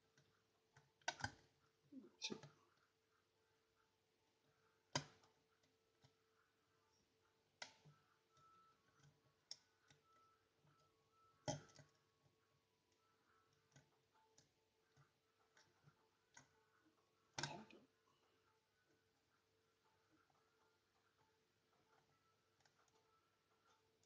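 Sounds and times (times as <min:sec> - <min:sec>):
lock pick clicking on pins: 0:00.8 - 0:01.5.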